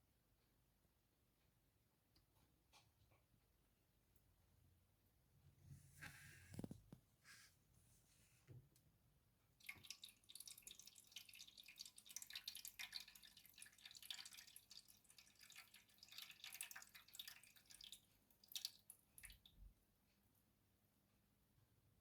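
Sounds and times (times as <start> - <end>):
water trickling and dripping: 9.6 - 19.7.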